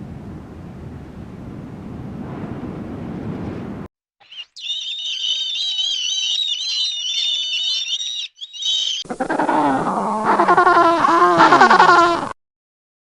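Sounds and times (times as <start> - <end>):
high rapid animal chirping: 4.2 - 9.5
animal cries wavering in pitch: 4.6 - 12.3.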